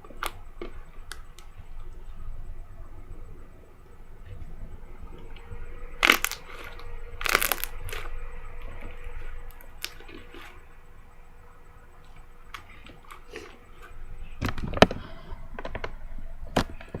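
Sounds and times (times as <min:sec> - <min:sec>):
crunchy slime squeezed by hand: 0:06.0 - 0:08.9.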